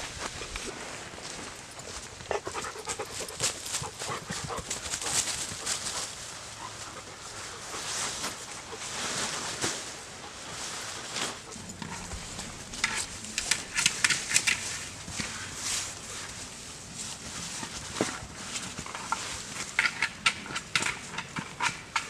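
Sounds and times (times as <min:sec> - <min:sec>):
dog panting: 0:02.2 - 0:08.8
sharp clicks or crunches: 0:11.8 - 0:14.9.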